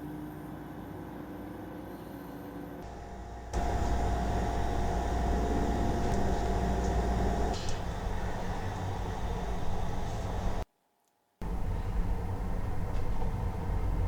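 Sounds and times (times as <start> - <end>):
kitchen fan humming: 2.8 - 10.6, 11.4 - 14.0.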